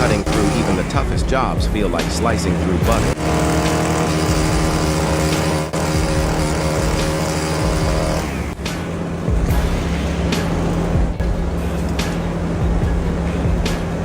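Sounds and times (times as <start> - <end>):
power saw cutting: 0.0 - 1.2, 1.9 - 11.2.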